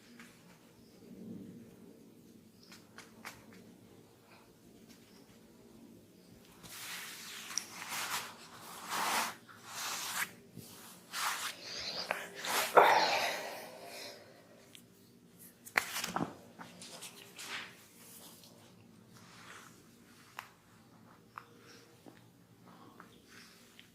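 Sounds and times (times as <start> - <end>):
hands rubbing on skin: 6.6 - 14.2.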